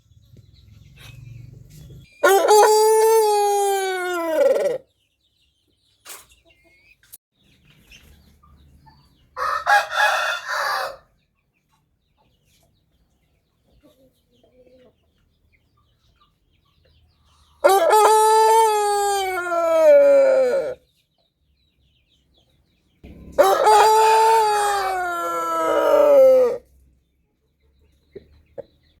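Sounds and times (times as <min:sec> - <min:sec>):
rooster crowing: 0:02.2 - 0:04.8, 0:09.4 - 0:11.1, 0:17.6 - 0:20.8, 0:23.0 - 0:26.6.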